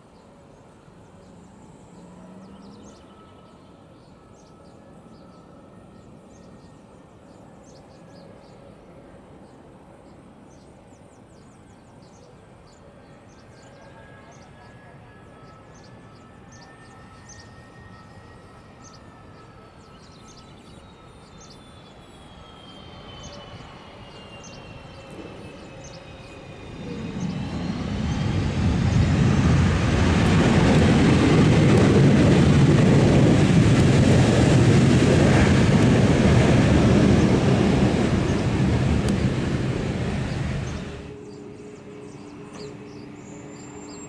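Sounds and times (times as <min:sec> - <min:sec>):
jet engine whine: 0:00.0 - 0:44.0
jet roar: 0:14.0 - 0:44.0.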